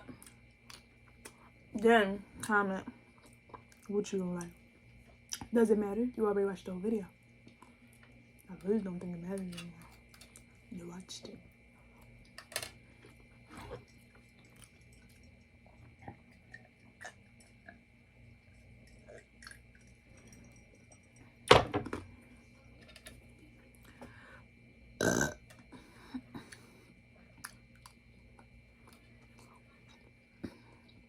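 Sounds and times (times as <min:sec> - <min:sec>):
faint eating clicks: 0:02.4 - 0:05.6
person burping loudly: 0:25.0 - 0:25.4.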